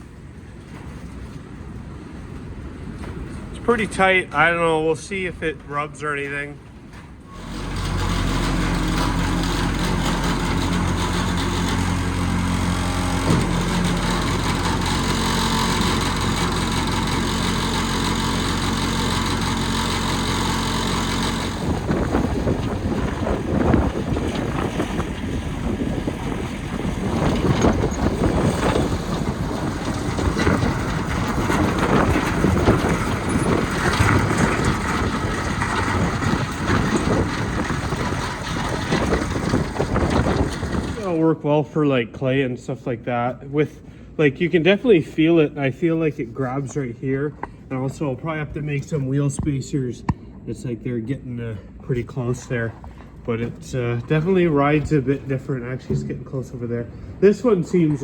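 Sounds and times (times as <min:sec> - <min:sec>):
tracks rattling and knocking: 0:05.6 - 0:41.2, 0:52.5 - 0:58.0
diesel engine running: 0:07.2 - 0:41.2.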